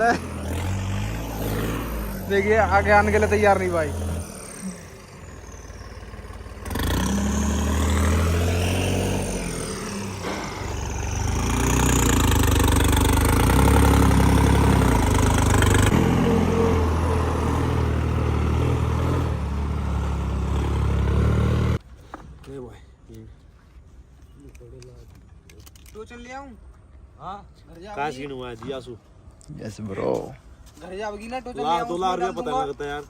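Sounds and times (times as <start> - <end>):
diesel tractor engines labouring: 0.0 - 21.8.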